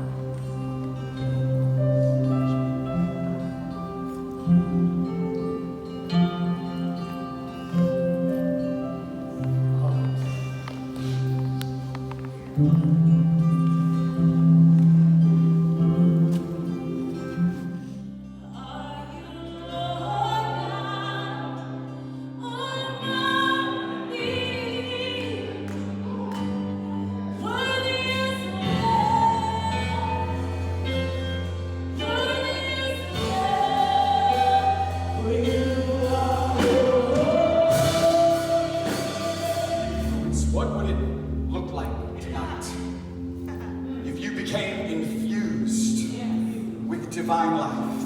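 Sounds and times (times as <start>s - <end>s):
voices singing held notes: 28.5s - 41.0s.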